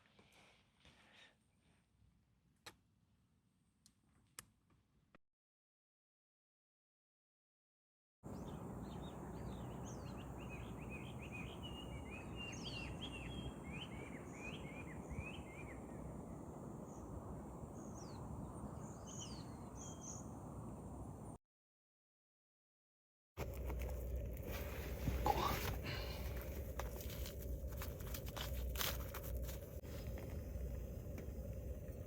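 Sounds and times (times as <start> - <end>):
small birds chirping: 8.3 - 20.4
outdoor background rush: 23.4 - 32.0.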